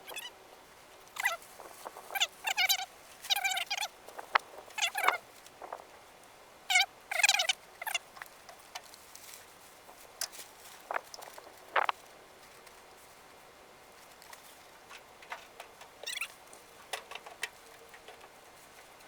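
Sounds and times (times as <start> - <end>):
chattering animal calls: 16.0 - 16.3.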